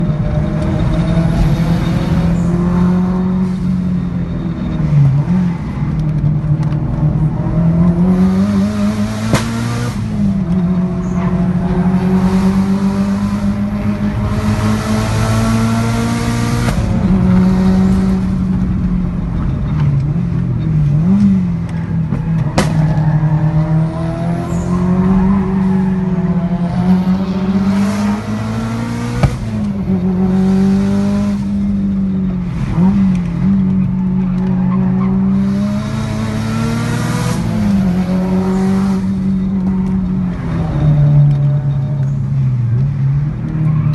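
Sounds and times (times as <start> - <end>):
car engine revving hard: 7.5 - 18.6, 22.6 - 31.8, 35.0 - 39.7.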